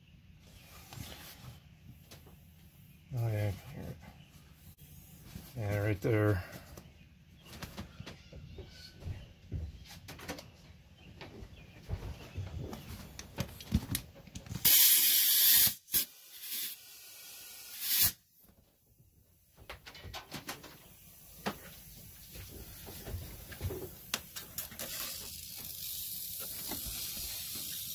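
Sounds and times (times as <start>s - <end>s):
air hissing from inner tube: 14.6s - 18.2s, 24.6s - 27.9s.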